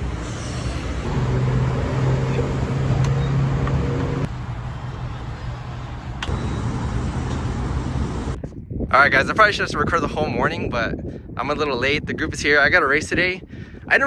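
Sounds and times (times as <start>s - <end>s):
background traffic noise: 0.0s - 8.4s
fuel dispenser humming: 1.1s - 4.3s, 6.2s - 8.4s.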